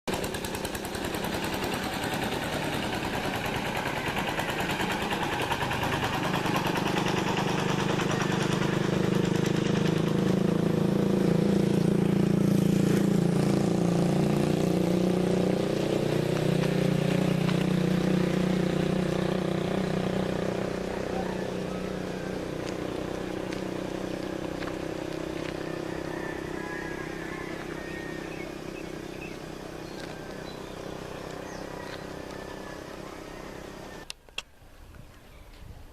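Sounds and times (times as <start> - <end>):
vehicle engine running: 0.0 - 34.1.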